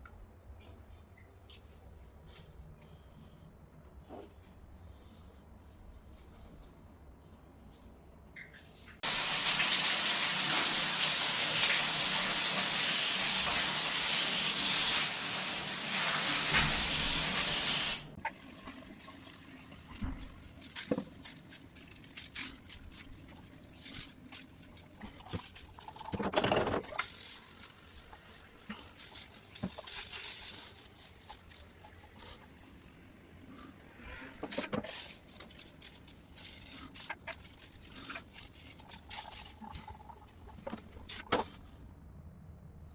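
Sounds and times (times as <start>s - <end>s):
water jet spraying: 9.0s - 18.2s.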